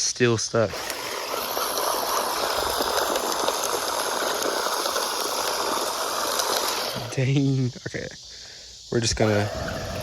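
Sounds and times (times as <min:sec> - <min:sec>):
faint high motor whine: 0:00.0 - 0:08.1, 0:08.9 - 0:10.0
tyres spinning in loose dirt: 0:00.6 - 0:07.6, 0:09.1 - 0:10.0.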